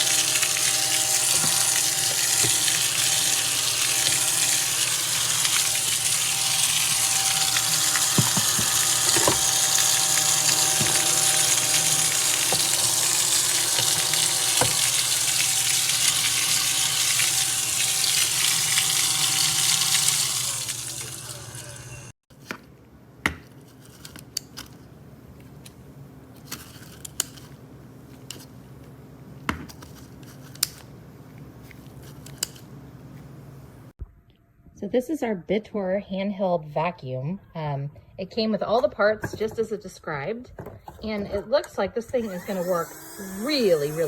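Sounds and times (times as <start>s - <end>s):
small vacuum cleaner whirring: 0.0s - 22.2s, 41.4s - 44.0s.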